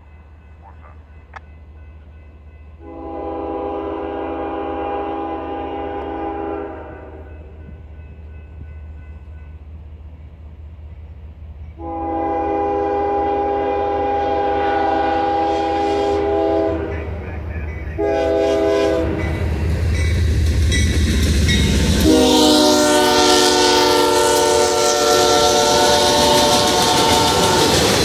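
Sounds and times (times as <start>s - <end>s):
locomotive air horn blasts: 2.8s - 7.4s, 11.8s - 17.0s, 18.0s - 19.4s, 22.0s - 28.0s.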